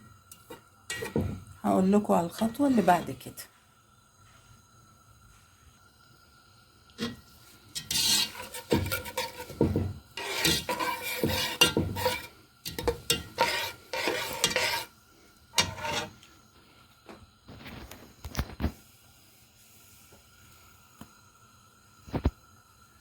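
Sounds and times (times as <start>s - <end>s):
scraping strokes in a pot: 0.0s - 1.5s, 2.1s - 3.4s, 6.9s - 16.8s
seeds frying in oil: 0.0s - 23.0s.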